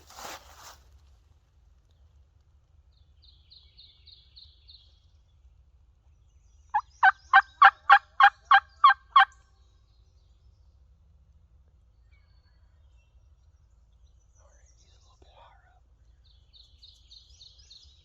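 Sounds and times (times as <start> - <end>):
turkey yelps: 7.0 - 9.3
small bird chirping: 13.9 - 18.0.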